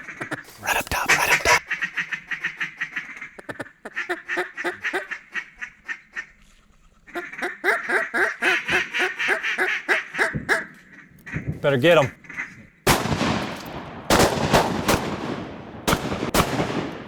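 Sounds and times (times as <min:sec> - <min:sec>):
duck quacking: 0:00.0 - 0:06.4, 0:07.1 - 0:12.6.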